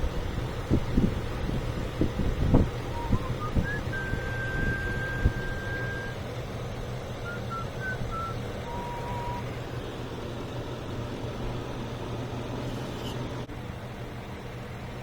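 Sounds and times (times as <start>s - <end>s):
car engine idling: 0.0s - 15.0s
thin whistled tones: 2.9s - 6.2s, 7.2s - 9.6s.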